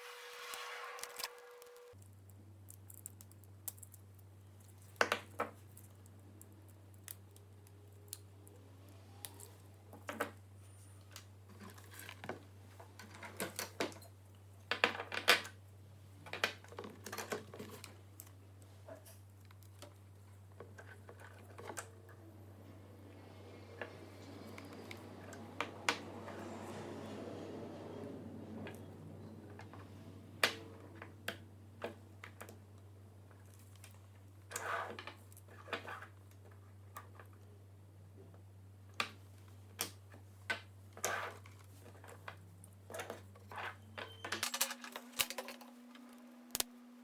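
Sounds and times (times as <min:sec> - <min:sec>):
small parts and tools clicking: 0:01.0 - 0:08.6, 0:44.0 - 0:46.7.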